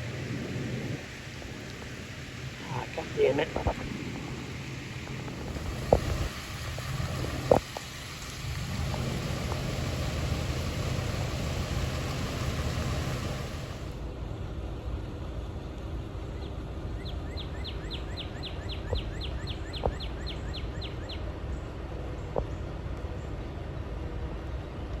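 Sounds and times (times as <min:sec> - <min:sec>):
steady rushing noise: 0:00.0 - 0:16.8.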